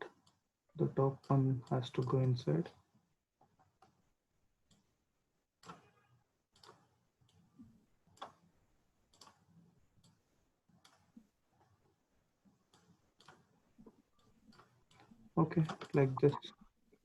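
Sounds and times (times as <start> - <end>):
computer mouse clicks: 6.6 - 7.4, 8.2 - 8.4, 9.1 - 9.4, 10.8 - 11.1, 12.7 - 13.5.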